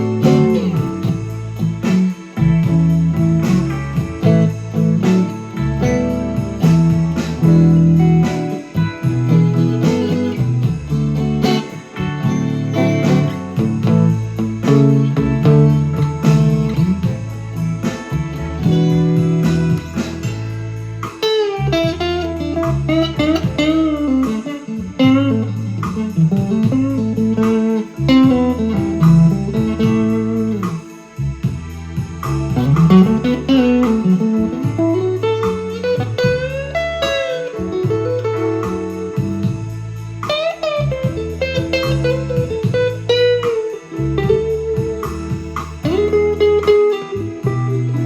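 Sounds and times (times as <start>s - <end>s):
electric guitar playing blues: 0.0s - 48.0s.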